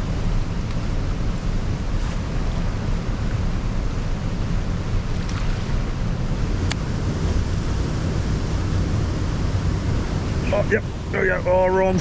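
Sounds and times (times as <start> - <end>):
wind buffeting microphone: 5.7 - 12.0.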